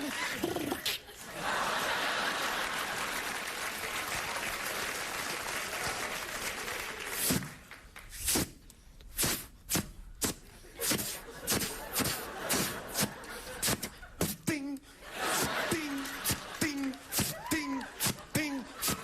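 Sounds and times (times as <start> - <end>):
audience applauding: 1.3 - 8.1, 15.2 - 18.3
mouth percussion into microphone: 9.2 - 14.8.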